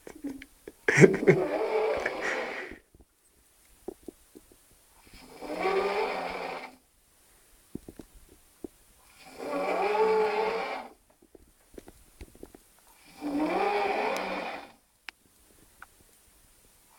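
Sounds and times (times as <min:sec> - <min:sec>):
man snoring: 0:00.9 - 0:02.8, 0:05.1 - 0:06.7, 0:09.1 - 0:10.9, 0:13.0 - 0:14.7
faint clicks: 0:15.0 - 0:16.3.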